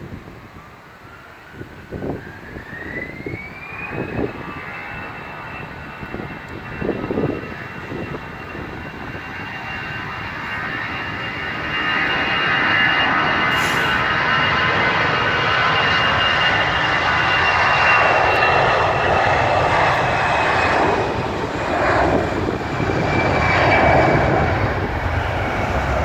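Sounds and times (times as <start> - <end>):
wind buffeting microphone: 1.5 - 26.0
jet engines spooling up: 11.7 - 20.9.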